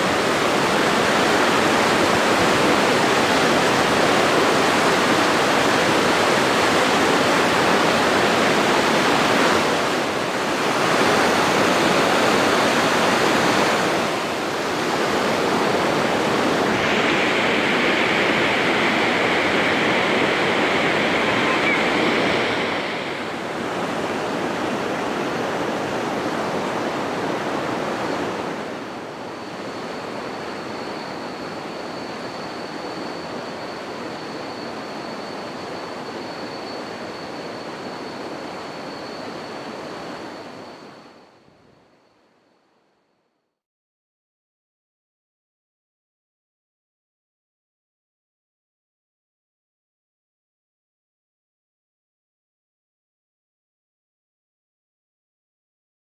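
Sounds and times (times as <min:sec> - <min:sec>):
loud rushing water: 0:00.0 - 0:40.9.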